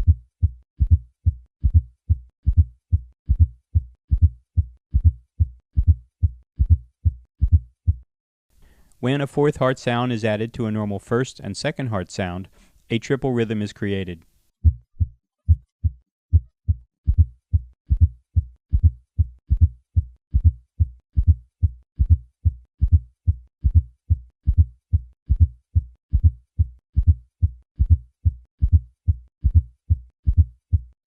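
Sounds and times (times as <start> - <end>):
heartbeat through stethoscope: 0.0 - 8.1, 14.6 - 31.0.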